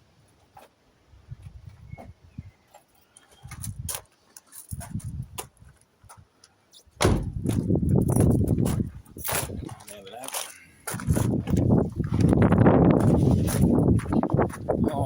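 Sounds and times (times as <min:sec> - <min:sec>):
wind buffeting microphone: 0:04.7 - 0:05.4, 0:07.0 - 0:09.9, 0:10.8 - 0:15.0.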